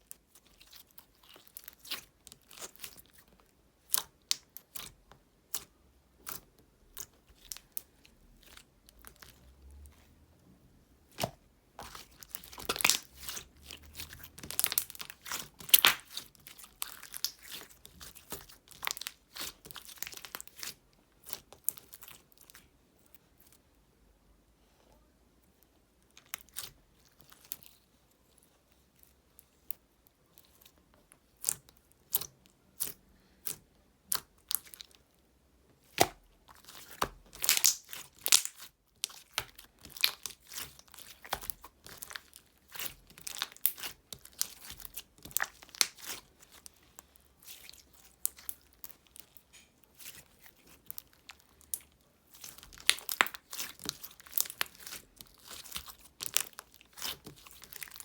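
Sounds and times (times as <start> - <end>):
crinkling and tearing crackles: 11.0 - 23.2, 35.8 - 58.0.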